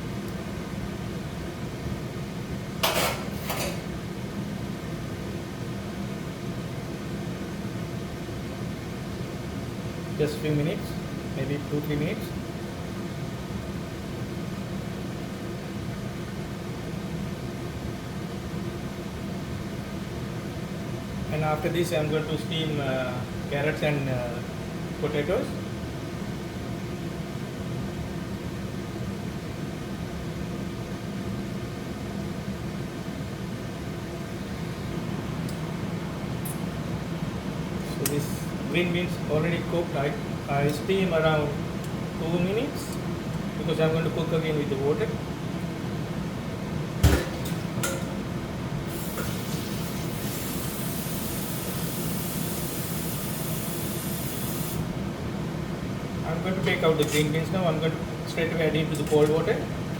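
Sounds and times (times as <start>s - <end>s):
steamer over boiling water: 47.0s - 59.9s
steam hissing from pot: 48.8s - 54.9s.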